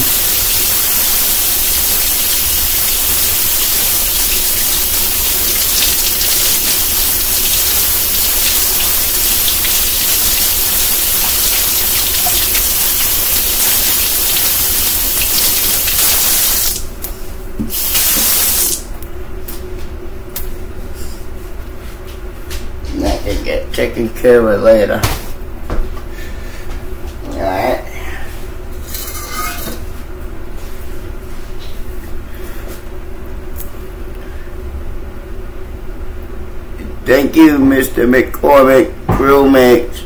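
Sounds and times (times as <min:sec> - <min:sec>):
tap water running into sink: 0:00.0 - 0:16.8.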